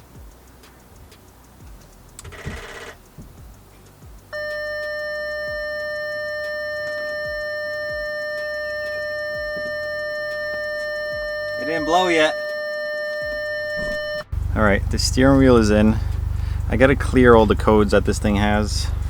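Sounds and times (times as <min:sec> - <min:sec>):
faint regular clicking: 0:00.0 - 0:11.3
car electronic warning tone: 0:02.2 - 0:03.0, 0:04.3 - 0:14.4
short buzz: 0:04.3 - 0:16.7.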